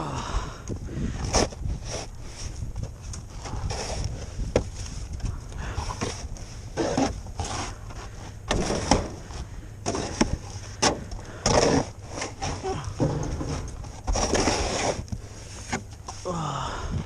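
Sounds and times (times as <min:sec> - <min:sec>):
person breathing hard: 0:00.0 - 0:01.4, 0:05.3 - 0:06.2, 0:10.6 - 0:12.0, 0:16.1 - 0:17.0
wind rumble on microphone: 0:00.1 - 0:11.1, 0:16.7 - 0:17.0
scrapes and crunches in snow: 0:03.3 - 0:08.3, 0:14.0 - 0:15.8.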